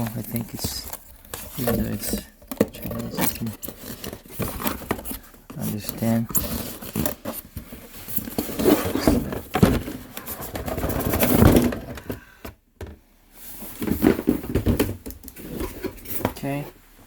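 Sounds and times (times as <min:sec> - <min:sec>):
cardboard packaging rustling: 0:00.0 - 0:12.2.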